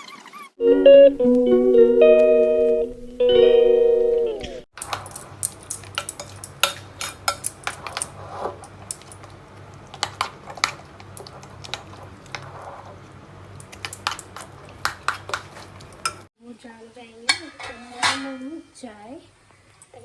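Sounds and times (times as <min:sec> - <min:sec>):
kitchen utensils clinking: 0:04.8 - 0:09.3, 0:13.6 - 0:16.3, 0:17.3 - 0:18.9.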